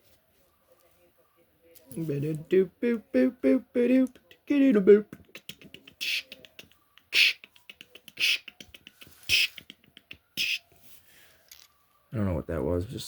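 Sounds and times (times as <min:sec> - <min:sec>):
man beatboxing hissing beats: 0:05.2 - 0:10.6.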